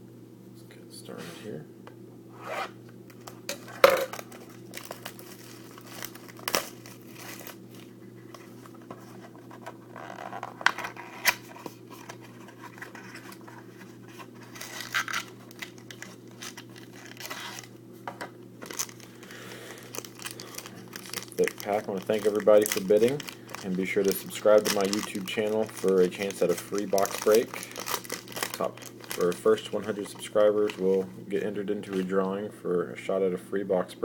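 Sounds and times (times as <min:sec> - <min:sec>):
steady low hum: 0:00.0 - 0:34.0
packaging tearing and crinkling: 0:04.1 - 0:07.9, 0:14.2 - 0:17.7, 0:18.6 - 0:31.0.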